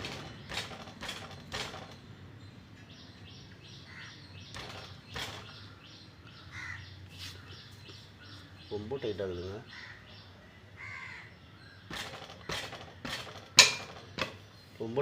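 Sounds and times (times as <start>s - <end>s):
spanner knocking on bolt: 0.0s - 2.0s, 11.9s - 14.4s
bird chirping: 0.0s - 15.0s
crows cawing: 3.9s - 4.2s, 5.5s - 7.7s, 9.7s - 12.9s.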